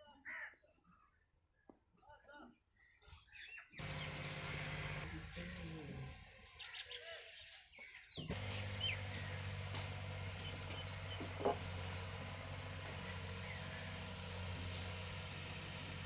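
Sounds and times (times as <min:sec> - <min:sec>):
birds chirping: 0:00.6 - 0:16.0
diesel engine running: 0:03.8 - 0:06.3, 0:08.2 - 0:16.0.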